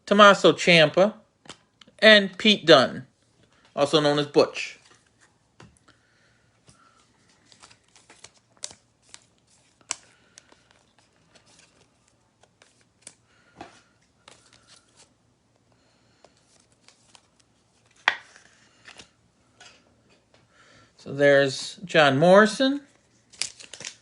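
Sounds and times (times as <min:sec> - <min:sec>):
cards clicking and tapping: 0:17.8 - 0:19.1
packaging crinkling: 0:23.2 - 0:24.0.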